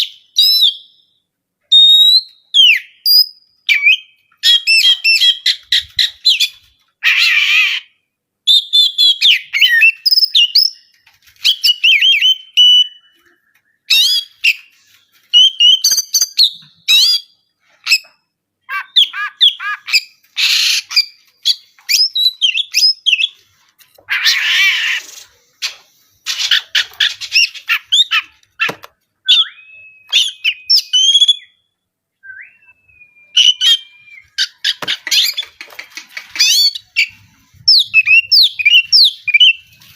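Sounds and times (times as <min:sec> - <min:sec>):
magpie-robin agitated song: 0:08.6 - 0:23.4, 0:26.3 - 0:31.6, 0:33.3 - 0:39.9.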